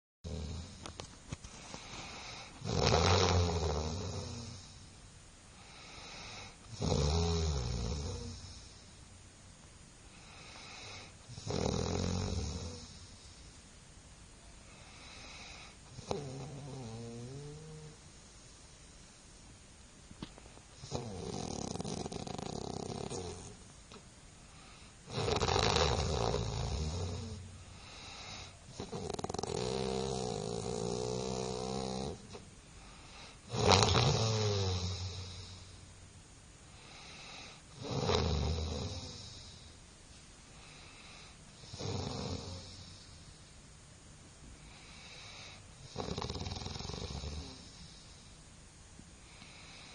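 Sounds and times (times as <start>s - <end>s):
person snoring: 0.3s - 1.0s, 1.6s - 4.8s, 5.6s - 8.8s, 10.2s - 13.4s, 14.7s - 18.0s, 20.8s - 23.6s, 24.5s - 35.7s, 36.8s - 39.7s, 40.6s - 43.2s, 44.6s - 48.3s.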